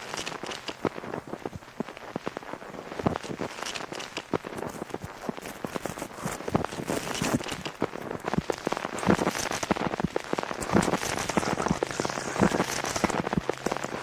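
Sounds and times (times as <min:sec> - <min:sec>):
pattering and crackling taps: 0:07.4 - 0:14.0
steady hiss: 0:10.6 - 0:14.0.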